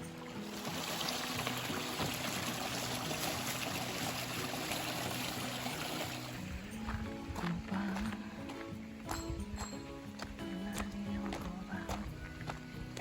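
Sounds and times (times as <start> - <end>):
mountain stream rushing: 0.0 - 7.5
background music: 0.0 - 13.0.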